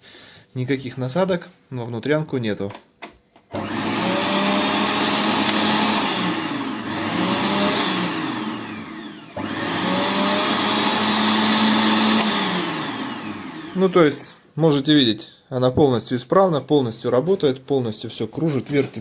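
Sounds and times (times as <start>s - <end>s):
food processor motor running: 3.5s - 14.0s.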